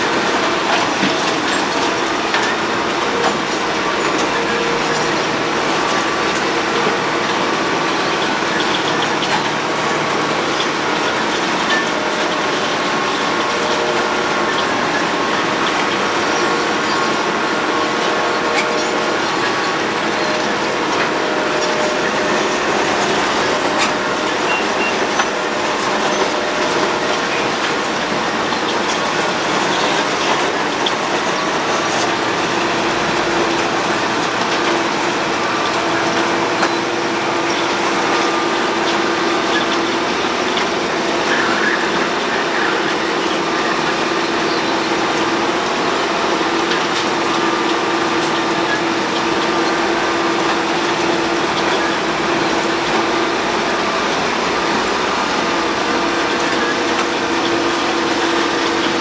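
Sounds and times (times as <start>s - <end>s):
road milling machine working: 0.0s - 59.0s.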